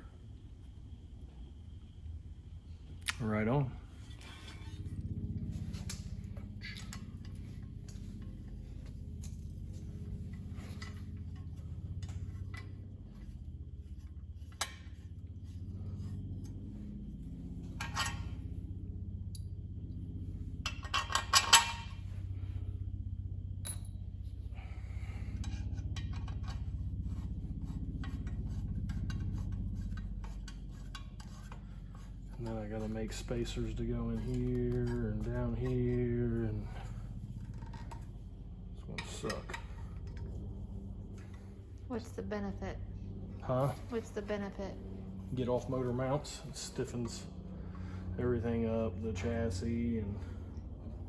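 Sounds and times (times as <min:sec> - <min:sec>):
steady low hum: 0:00.0 - 0:51.0
metal tools clinking: 0:20.7 - 0:22.0, 0:23.6 - 0:24.0.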